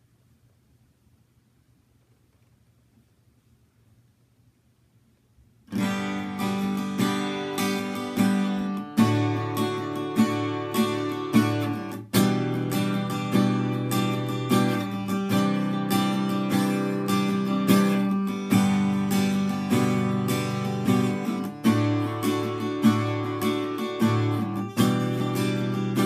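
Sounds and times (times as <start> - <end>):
acoustic guitar strumming: 5.7 - 26.0.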